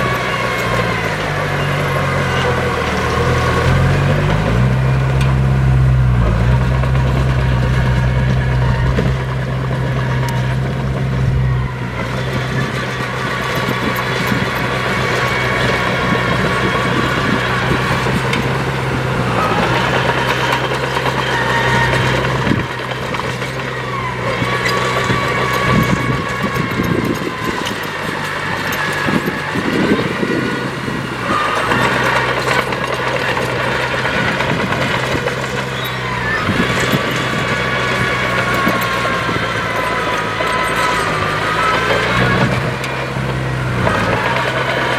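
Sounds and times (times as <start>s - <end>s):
heavy diesel machinery engine: 0.0s - 44.9s
high whining tones: 5.2s - 33.6s.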